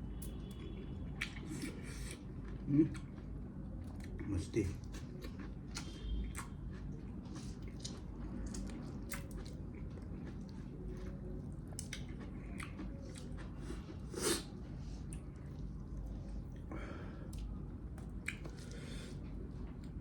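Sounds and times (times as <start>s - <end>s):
person chewing meat: 0.2s - 20.0s
wet mouth smacks: 18.2s - 18.7s.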